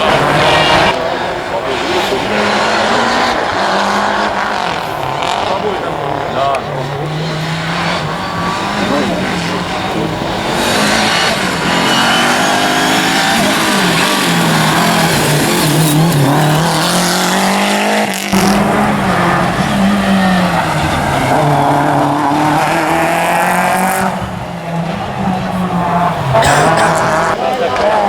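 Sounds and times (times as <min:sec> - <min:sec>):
rally car engine revving: 0:00.0 - 0:28.0.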